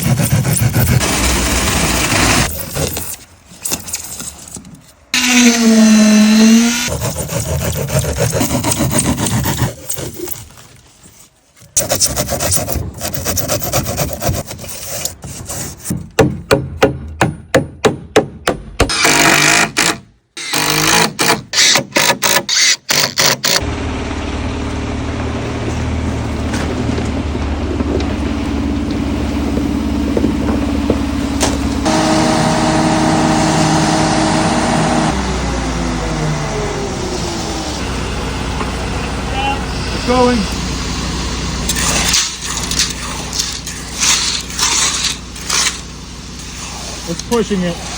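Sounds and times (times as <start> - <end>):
machinery running: 0.0 - 3.1, 23.6 - 47.9
pitched whine: 5.1 - 7.1, 23.6 - 47.9.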